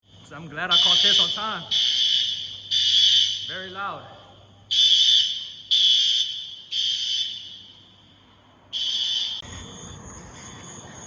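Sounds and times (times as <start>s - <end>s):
crickets chirping: 0.0s - 11.0s
fire alarm horn blasts: 0.6s - 9.4s.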